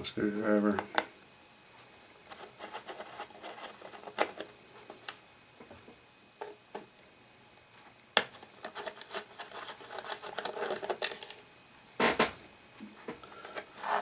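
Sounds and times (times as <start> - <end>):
screwdriver clicking and scraping: 8.6 - 11.2.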